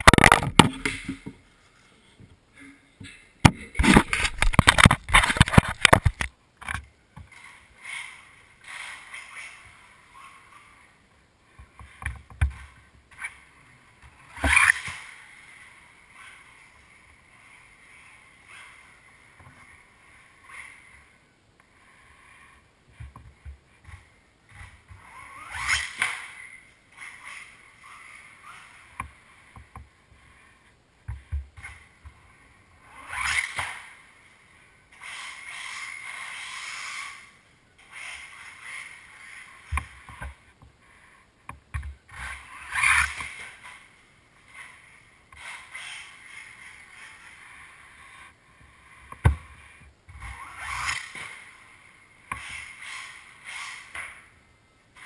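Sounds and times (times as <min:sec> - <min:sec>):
toy car electric motor whining: 0:25.0 - 0:28.9, 0:35.0 - 0:40.1, 0:42.2 - 0:43.6, 0:50.2 - 0:51.6, 0:52.4 - 0:54.0.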